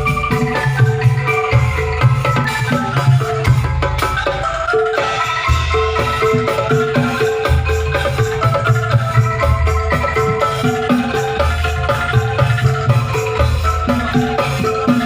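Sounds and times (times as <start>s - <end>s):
angklung melody: 0.0s - 15.0s.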